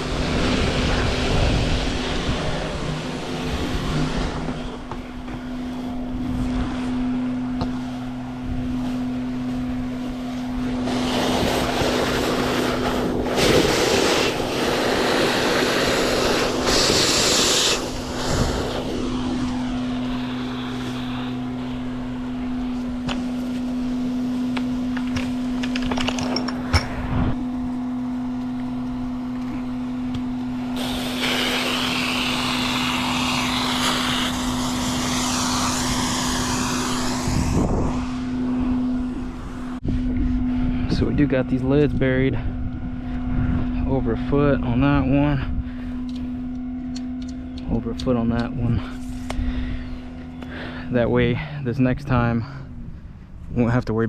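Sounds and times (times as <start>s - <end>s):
truck engine droning: 0.0s - 54.0s
hissing noise: 10.5s - 23.8s, 30.7s - 39.8s.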